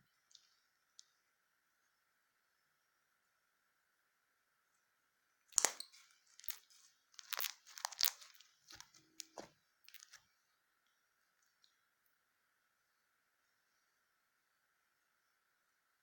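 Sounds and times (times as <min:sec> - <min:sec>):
slime crackling and popping: 0:05.5 - 0:10.2.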